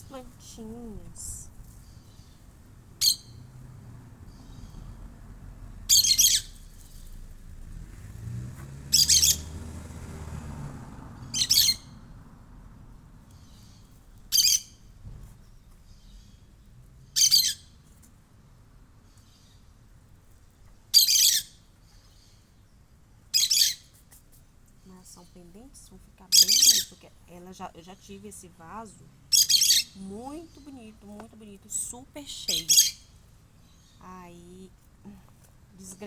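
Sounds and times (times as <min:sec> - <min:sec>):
parakeets calling: 0:00.0 - 0:05.0, 0:05.8 - 0:07.1, 0:08.9 - 0:09.6, 0:11.2 - 0:12.0, 0:13.3 - 0:14.8, 0:17.0 - 0:17.8, 0:20.9 - 0:22.4, 0:23.3 - 0:23.9, 0:25.1 - 0:34.4.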